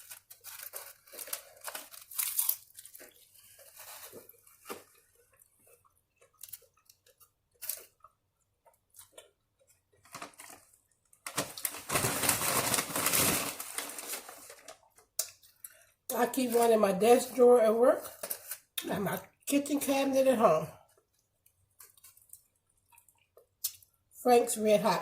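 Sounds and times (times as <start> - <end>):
chewing and crunching taco: 0.0 - 11.7, 20.8 - 24.1
dense crunching or rustling: 10.0 - 14.8.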